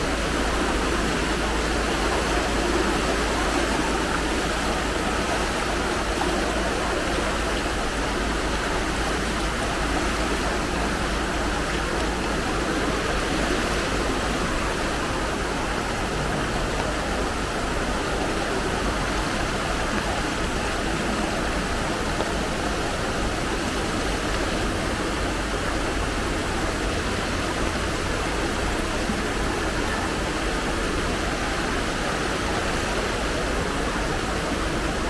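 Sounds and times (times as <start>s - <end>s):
floodwater rushing: 0.0s - 35.0s
heavy rain: 0.0s - 35.0s.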